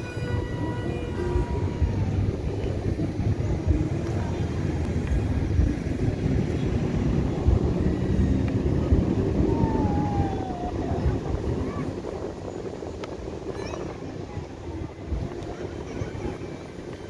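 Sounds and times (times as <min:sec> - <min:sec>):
loud uneven low rumble: 0:00.0 - 0:17.0.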